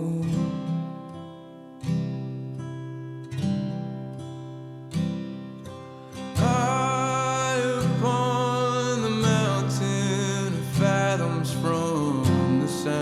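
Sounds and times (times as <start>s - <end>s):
person singing: 0.0s - 0.7s, 6.4s - 13.0s
slow acoustic guitar song: 0.0s - 13.0s.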